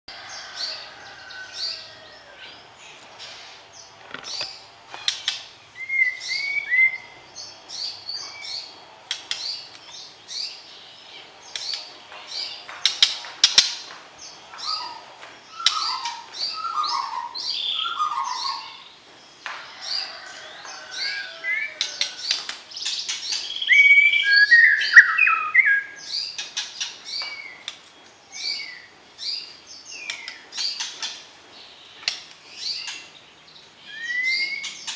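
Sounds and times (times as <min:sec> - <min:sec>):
songbird singing whistled notes: 0:05.8 - 0:07.2, 0:14.6 - 0:18.9, 0:22.8 - 0:27.7, 0:33.8 - 0:34.9.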